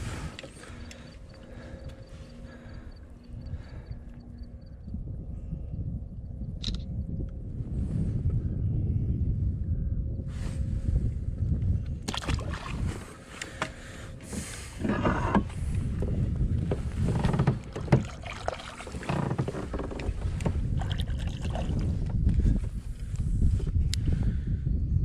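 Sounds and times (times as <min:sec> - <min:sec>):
steady low rumble: 0:00.0 - 0:25.0
water sounds: 0:12.1 - 0:13.6, 0:17.1 - 0:22.1.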